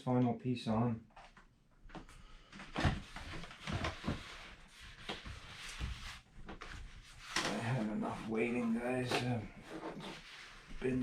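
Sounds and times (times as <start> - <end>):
soft knocks and rustles: 1.1 - 8.2.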